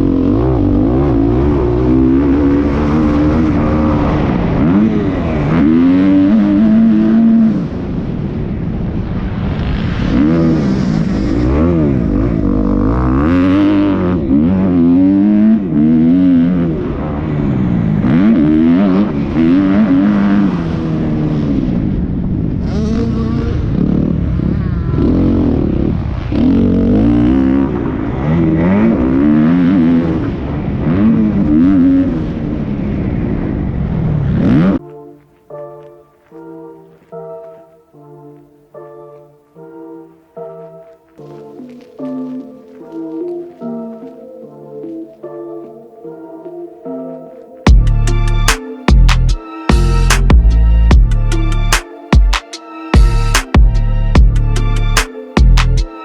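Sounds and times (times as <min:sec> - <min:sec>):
dirt bike engine revving: 0:00.0 - 0:08.2, 0:09.1 - 0:22.0, 0:22.6 - 0:34.8.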